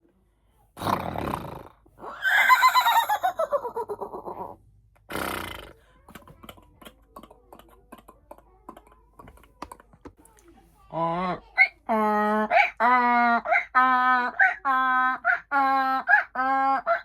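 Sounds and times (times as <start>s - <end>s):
person imitating animal call: 10.9s - 17.0s.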